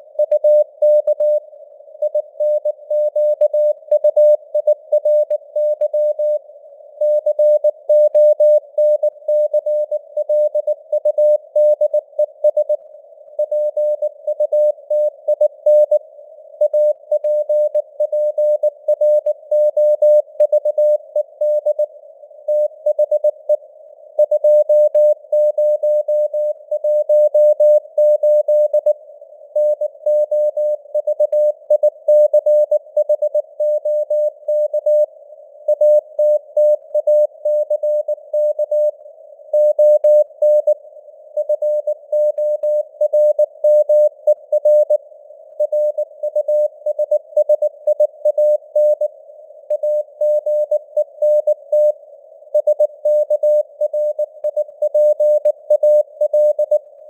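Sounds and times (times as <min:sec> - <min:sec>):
morse code tone: 0:52.6 - 0:56.8.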